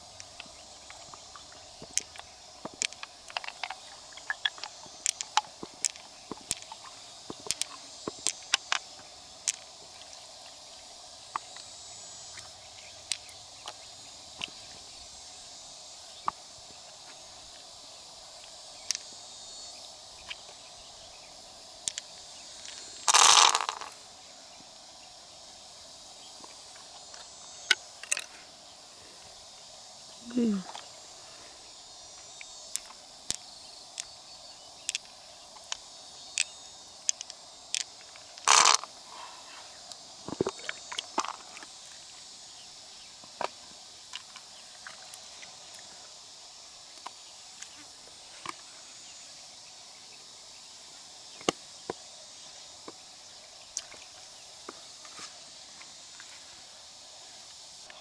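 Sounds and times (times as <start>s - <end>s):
insects chirring: 0.0s - 58.0s
steady outdoor hiss: 0.0s - 58.0s
mussel shells clicking: 1.8s - 9.7s, 21.8s - 24.0s, 27.7s - 28.4s, 34.8s - 35.8s, 36.4s - 38.9s.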